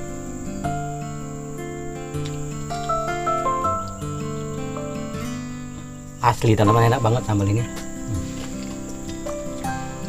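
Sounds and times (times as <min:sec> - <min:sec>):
crickets chirring: 0:00.0 - 0:10.0
plucked guitar music: 0:00.0 - 0:10.0.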